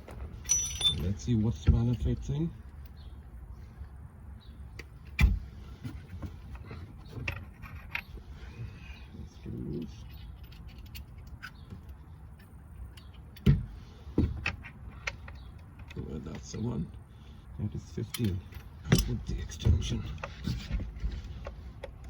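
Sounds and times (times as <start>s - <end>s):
metal spanners clinking: 0.0s - 2.9s, 6.7s - 8.3s, 9.3s - 13.4s, 17.9s - 20.4s.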